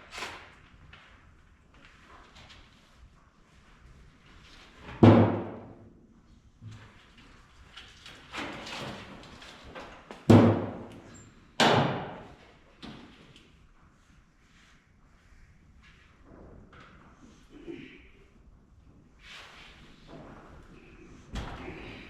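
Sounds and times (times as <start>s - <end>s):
objects knocking and handling: 10.1s - 13.0s.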